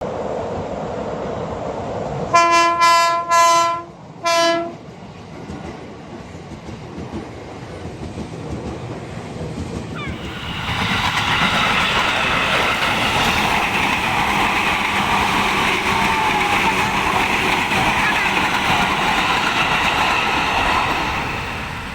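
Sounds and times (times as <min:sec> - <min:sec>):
train running and wheel noise: 0:00.0 - 0:21.9
train horn blasts: 0:02.3 - 0:04.8.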